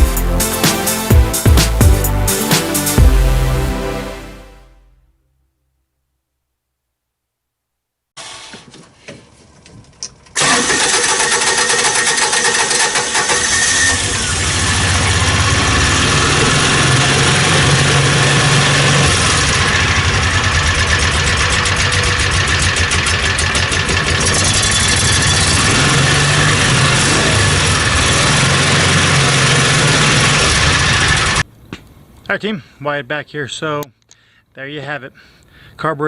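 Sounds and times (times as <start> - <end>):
engine running steadily: 12.8 - 31.5.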